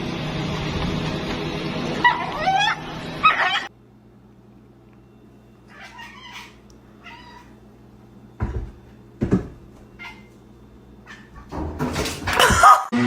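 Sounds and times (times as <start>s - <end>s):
cat meowing: 5.7s - 7.6s, 10.0s - 10.3s
dull thumps: 8.4s - 9.9s.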